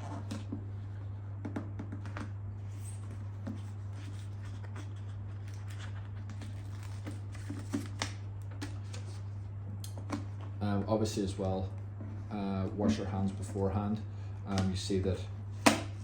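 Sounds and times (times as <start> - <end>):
steady low hum: 0.0 - 16.0
fingers rustling and tapping vinyl: 1.4 - 10.6.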